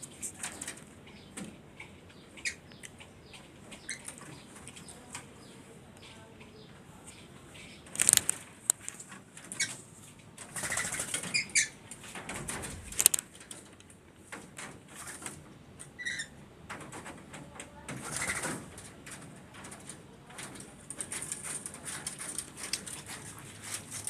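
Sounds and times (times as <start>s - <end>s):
bird wings flapping: 10.4s - 11.5s, 17.9s - 18.8s.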